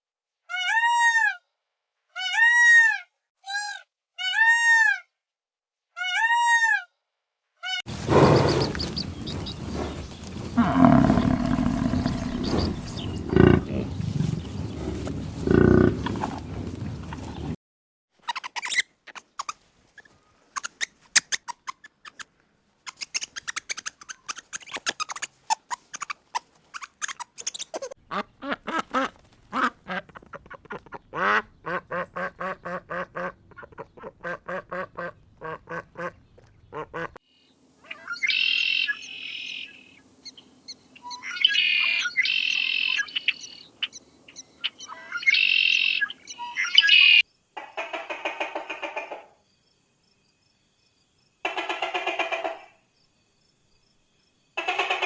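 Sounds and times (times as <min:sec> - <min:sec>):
ducks quacking: 0:07.9 - 0:17.6, 0:28.1 - 0:37.2, 0:37.9 - 0:40.0, 0:41.0 - 0:49.2
farm birds calling: 0:07.9 - 0:17.6, 0:25.8 - 0:37.2, 0:37.8 - 0:47.2
high-pitched bird calls: 0:08.1 - 0:14.8, 0:18.3 - 0:22.3, 0:22.9 - 0:28.0, 0:37.8 - 0:47.2
faint steady hum: 0:37.3 - 0:47.6.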